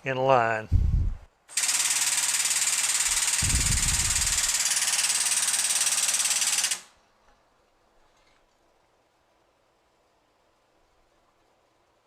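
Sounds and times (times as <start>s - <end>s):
press pump pulsing hiss: 1.5s - 6.9s.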